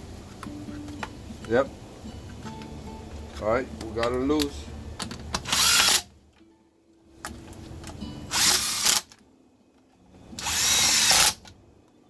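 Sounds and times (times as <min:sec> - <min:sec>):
chainsaw starter rope whirring: 0:05.4 - 0:06.1, 0:08.3 - 0:09.1, 0:10.4 - 0:11.4.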